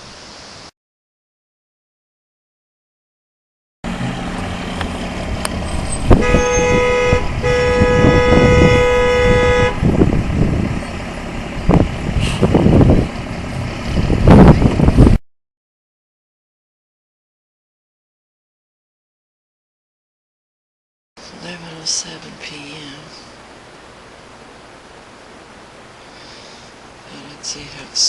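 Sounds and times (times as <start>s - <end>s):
low rumbling: 3.8s - 15.2s
vehicle horn honking: 5.9s - 10.0s.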